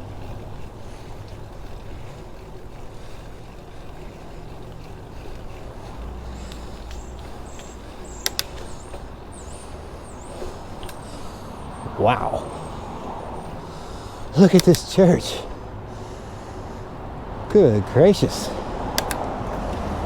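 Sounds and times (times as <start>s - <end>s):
bicycle tyre noise: 0.0s - 20.0s
sharp clicks: 6.2s - 15.4s, 18.9s - 19.9s.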